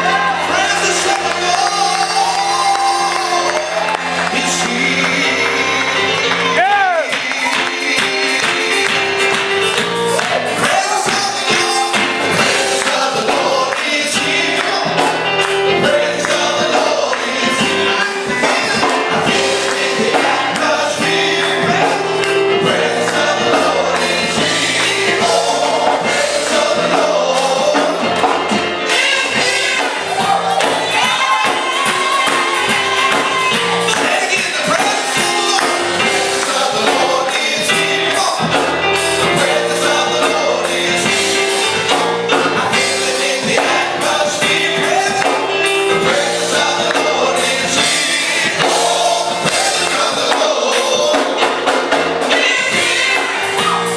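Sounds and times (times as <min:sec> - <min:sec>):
band playing gospel music: 0:00.0 - 0:53.9
choir singing: 0:00.0 - 0:53.9
steady percussion: 0:00.0 - 0:53.9.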